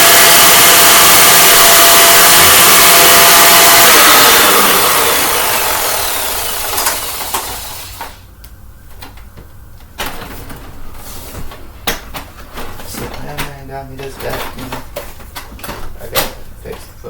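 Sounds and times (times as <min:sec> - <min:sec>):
vacuum cleaner motor winding down: 0:00.0 - 0:08.3
handling clicks and knocks: 0:11.4 - 0:17.0.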